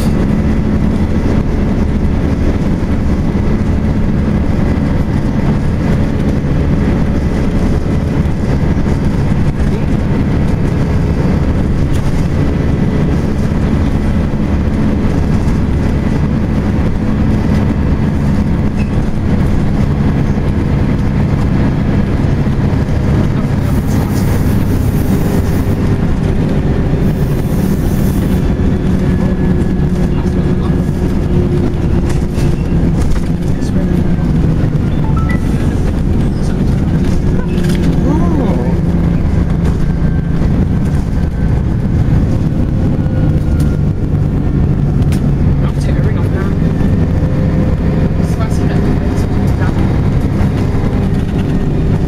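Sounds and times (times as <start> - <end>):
bus engine and cooling fan drone: 0.0 - 52.0.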